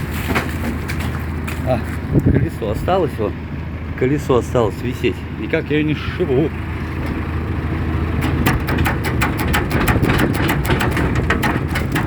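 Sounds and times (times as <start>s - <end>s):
diesel truck engine running: 0.0s - 12.0s
rapid driveshaft ticking: 8.2s - 12.0s.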